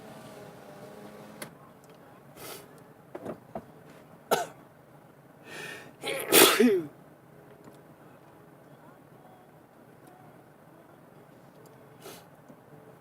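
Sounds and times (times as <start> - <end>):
sharp in-breaths: 5.5 - 6.0
person sneezing: 6.0 - 6.9.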